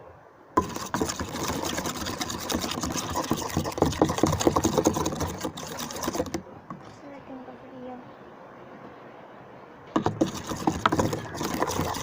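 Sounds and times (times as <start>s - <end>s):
slime being stirred squelching: 0.6s - 6.9s, 10.0s - 12.0s.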